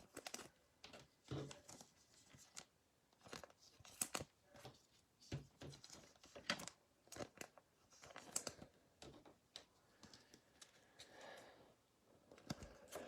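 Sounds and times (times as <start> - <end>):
hands handling cards and packaging: 0.0 - 8.7.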